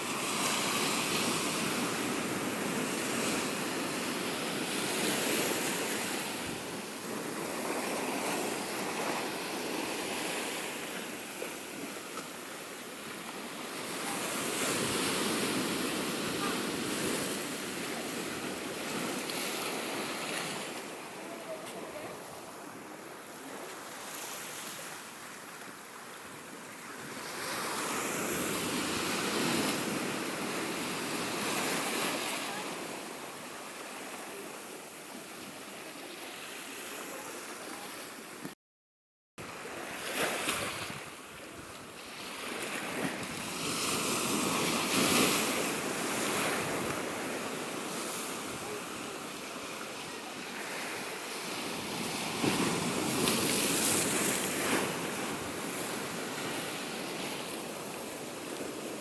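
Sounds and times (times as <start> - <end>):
ocean waves washing on shore: 39.4 - 59.0.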